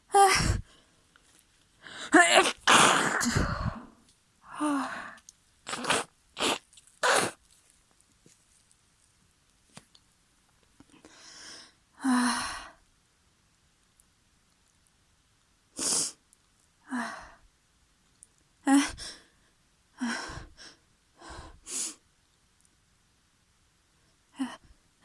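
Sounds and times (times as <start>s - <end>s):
person sneezing: 2.0s - 4.0s, 5.7s - 7.4s.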